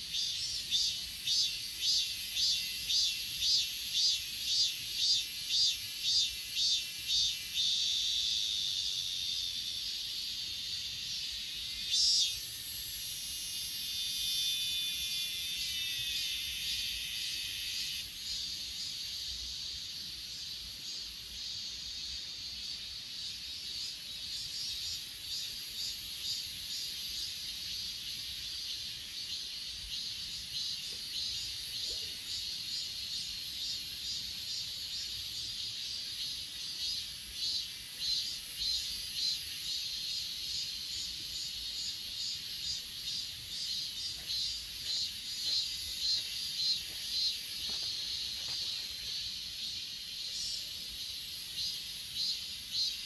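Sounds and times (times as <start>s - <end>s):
grass insects chirping: 0.0s - 53.0s
high insect buzz: 0.1s - 53.0s.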